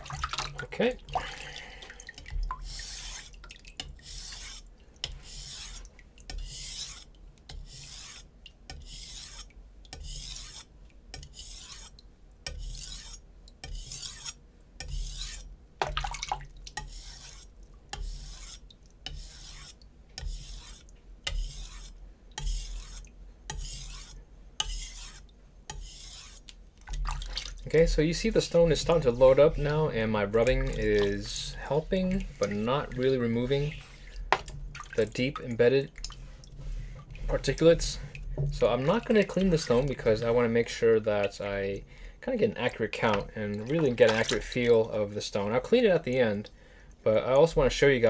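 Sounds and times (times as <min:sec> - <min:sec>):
knife scraping on whetstone: 0:02.6 - 0:15.5, 0:16.8 - 0:26.5, 0:28.1 - 0:34.6.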